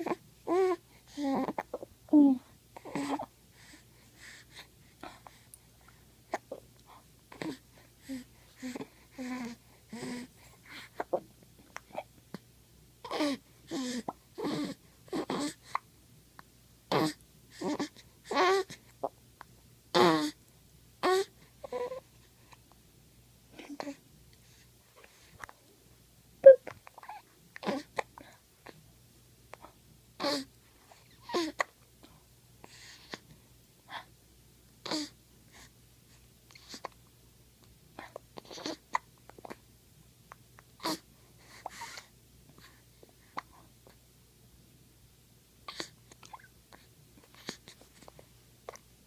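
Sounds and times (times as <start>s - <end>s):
person hiccuping: 26.4s - 26.7s.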